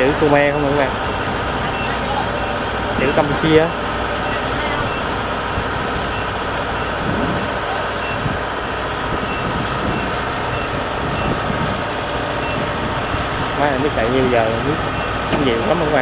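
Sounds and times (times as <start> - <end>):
heavy diesel engine running: 0.0 - 16.0
short high beeps: 0.4 - 3.2, 7.9 - 8.3, 9.3 - 11.4, 14.8 - 15.8.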